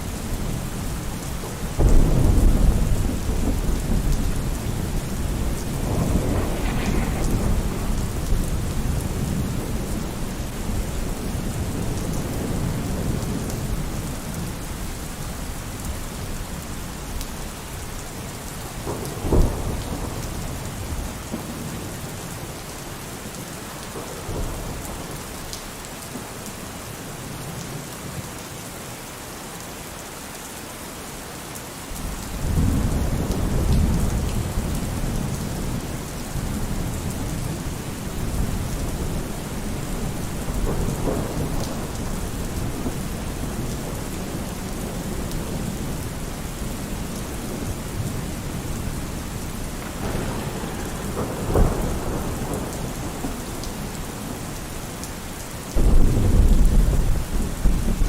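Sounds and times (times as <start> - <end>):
thunder rumbling: 0.0 - 15.5, 17.1 - 22.5, 31.9 - 58.0
steady rain falling: 0.0 - 58.0
sharp thunderclap: 1.7 - 13.8, 18.8 - 21.8, 32.0 - 46.8, 47.5 - 54.5, 55.8 - 58.0.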